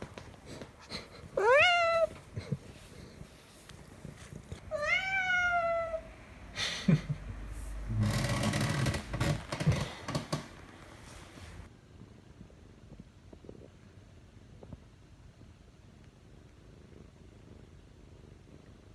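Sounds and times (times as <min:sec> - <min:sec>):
rustling: 0:00.0 - 0:05.9, 0:07.6 - 0:11.7
cat meowing: 0:01.4 - 0:02.3, 0:04.7 - 0:06.1.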